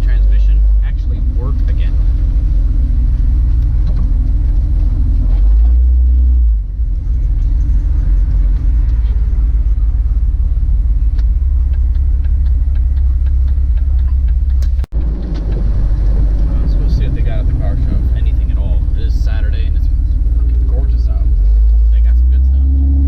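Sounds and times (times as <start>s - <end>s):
car engine and road rumble: 0.0s - 23.0s.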